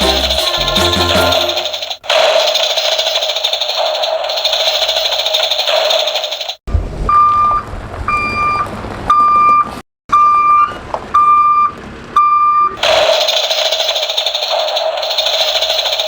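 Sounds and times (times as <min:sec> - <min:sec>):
music: 0:00.0 - 0:01.7
reversing alarm beeps: 0:07.1 - 0:12.8.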